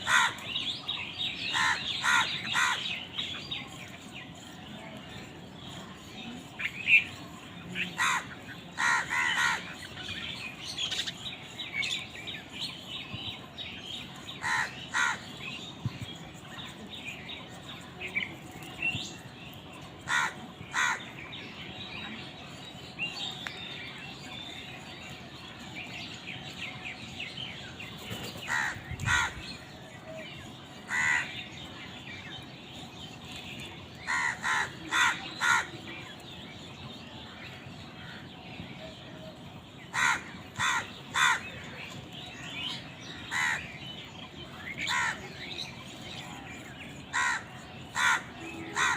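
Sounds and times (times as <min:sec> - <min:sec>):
crows cawing: 0:00.0 - 0:00.5, 0:01.5 - 0:03.0, 0:07.9 - 0:09.8, 0:14.4 - 0:15.3, 0:20.0 - 0:21.1, 0:28.4 - 0:29.4, 0:30.9 - 0:31.4, 0:34.0 - 0:35.7, 0:39.9 - 0:41.6, 0:43.2 - 0:43.7, 0:44.8 - 0:45.2, 0:47.1 - 0:48.9
small birds chirping: 0:00.0 - 0:48.9.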